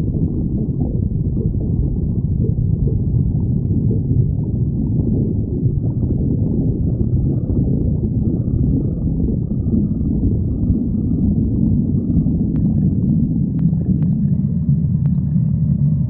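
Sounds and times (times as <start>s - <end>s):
stomach growling: 0.0s - 16.0s.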